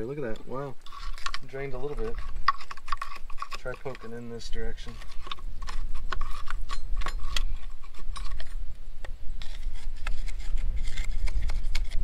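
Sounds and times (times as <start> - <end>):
wire clicking and scraping metal: 0.2 - 8.6.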